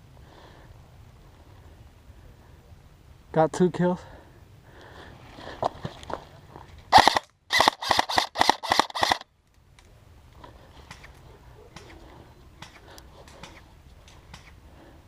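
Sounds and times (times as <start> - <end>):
airsoft gun shots: 6.9 - 9.2.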